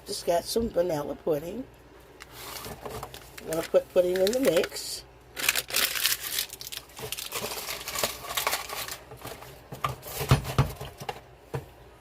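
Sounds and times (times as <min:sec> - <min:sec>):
packet crinkling and rustling: 0:02.2 - 0:11.2.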